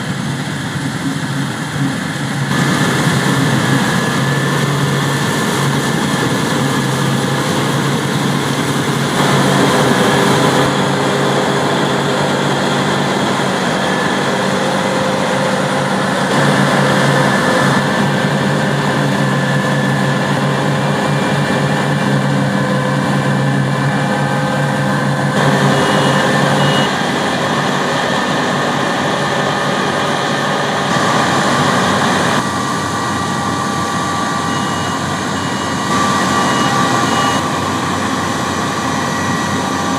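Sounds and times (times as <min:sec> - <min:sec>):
harvest machinery running: 0:00.0 - 0:39.9.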